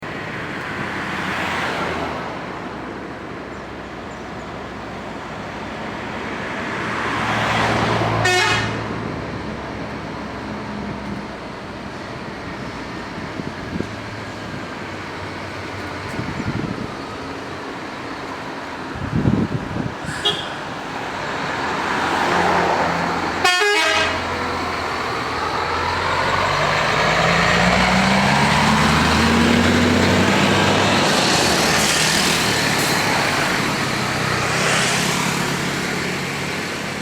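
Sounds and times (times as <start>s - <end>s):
diesel engine passing by: 0.0s - 37.0s
traffic passing: 0.0s - 37.0s
horn toots: 8.2s - 8.9s, 20.1s - 20.6s, 23.4s - 24.3s.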